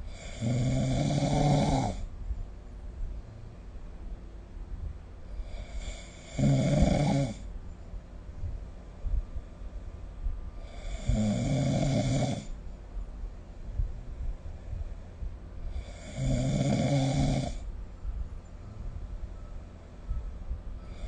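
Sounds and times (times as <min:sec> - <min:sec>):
person snoring: 0:00.1 - 0:02.1, 0:05.4 - 0:07.4, 0:10.6 - 0:12.6, 0:15.7 - 0:17.6.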